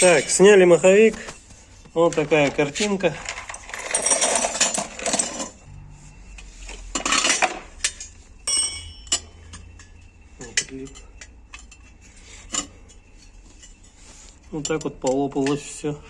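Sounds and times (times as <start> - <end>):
metal tools clattering on bench: 0.0 - 5.6, 6.7 - 16.0
short metallic ring: 8.4 - 10.0.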